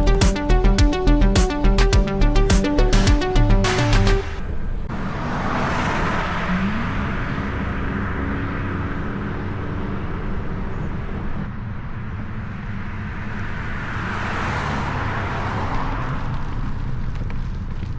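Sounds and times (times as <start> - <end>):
road traffic rumble: 0.0 - 17.9
vehicle passing: 3.9 - 17.2.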